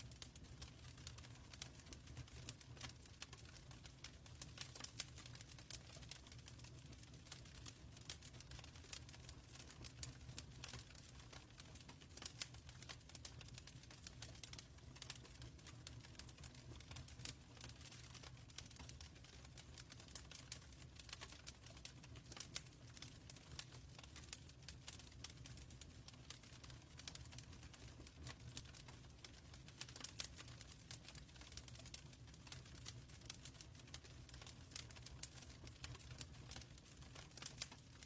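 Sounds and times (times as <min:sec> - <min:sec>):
wood fire crackling: 0:00.0 - 0:38.0.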